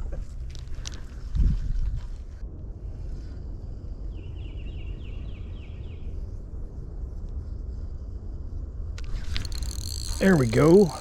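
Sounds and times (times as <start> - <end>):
low outdoor rumble by a creek: 8.9 - 11.0.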